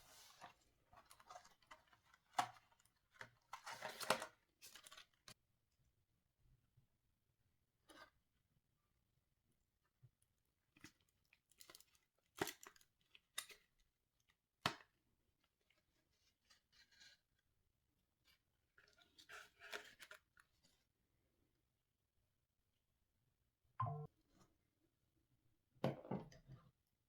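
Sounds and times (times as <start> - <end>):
packaging crinkling and rustling: 0.2 - 5.3.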